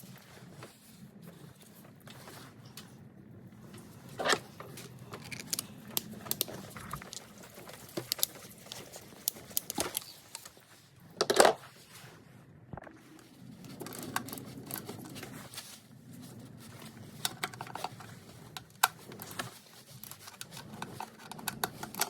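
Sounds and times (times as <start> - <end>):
hand tools clicking and rattling: 5.1 - 10.5, 17.2 - 22.0.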